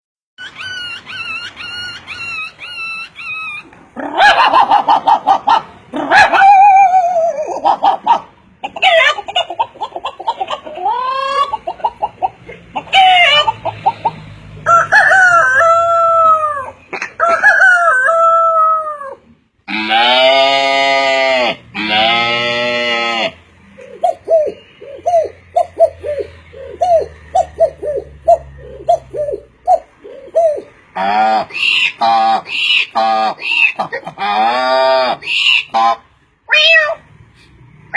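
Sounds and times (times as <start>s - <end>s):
chickens clucking: 0.4s - 6.3s, 7.0s - 18.2s
rooster crowing: 14.6s - 19.2s.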